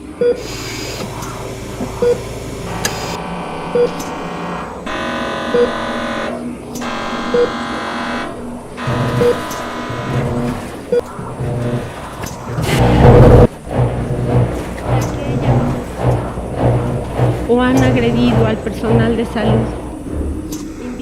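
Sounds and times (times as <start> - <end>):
drone of steady tones: 0.0 - 21.0.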